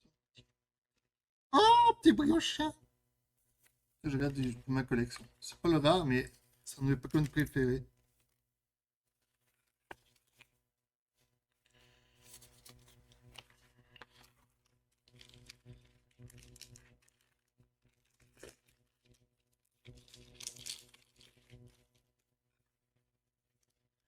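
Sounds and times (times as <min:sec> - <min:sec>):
foil pack tearing and crinkling: 0:12.2 - 0:22.1.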